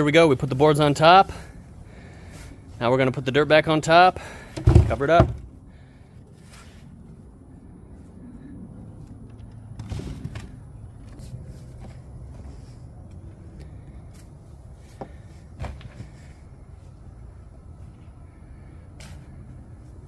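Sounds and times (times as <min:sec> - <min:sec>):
scrapes and thuds: 0:04.5 - 0:05.5, 0:09.8 - 0:10.6, 0:14.1 - 0:16.4
steady low rumble: 0:05.4 - 0:20.0.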